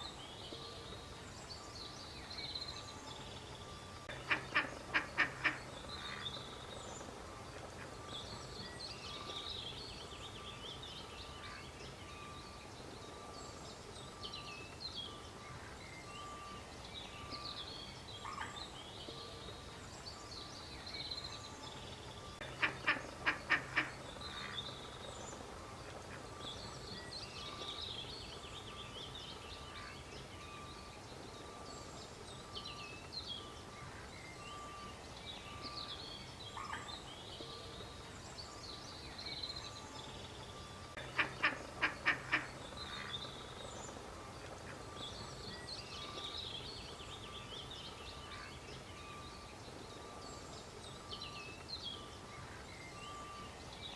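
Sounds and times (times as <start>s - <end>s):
duck quacking: 4.2s - 6.2s, 22.5s - 24.5s, 41.0s - 43.1s.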